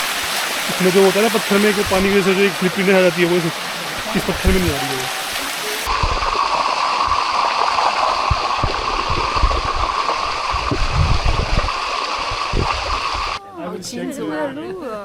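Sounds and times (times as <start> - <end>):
waterfall rushing over rocks: 0.0 - 13.4
low rumbling bumps: 5.9 - 13.4.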